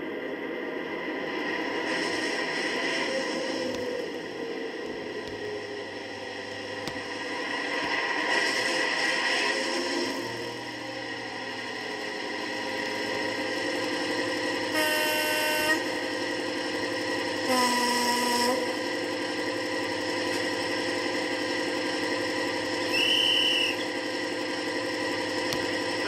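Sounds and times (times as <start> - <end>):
diesel locomotive engine hum: 0.0 - 26.0
locomotive horn blast: 14.7 - 16.0, 17.4 - 18.7
short high whistle: 22.8 - 23.9.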